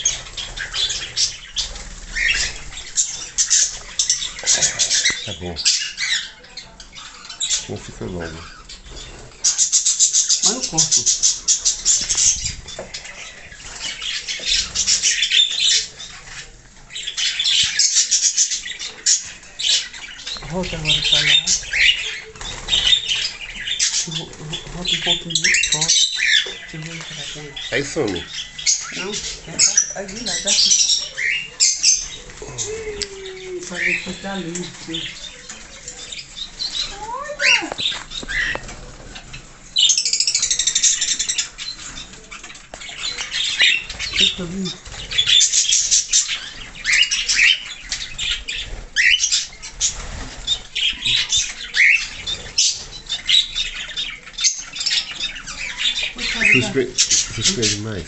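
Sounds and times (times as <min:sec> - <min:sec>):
small birds chirping: 0:00.0 - 0:58.0
wings fluttering: 0:18.4 - 0:39.5, 0:40.3 - 0:57.8.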